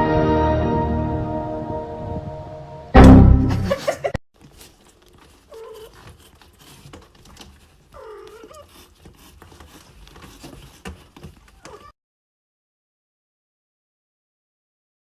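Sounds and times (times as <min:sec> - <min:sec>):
loud music hit: 0:00.0 - 0:03.7
cat meowing softly: 0:05.5 - 0:06.0, 0:08.0 - 0:08.7, 0:11.6 - 0:12.0.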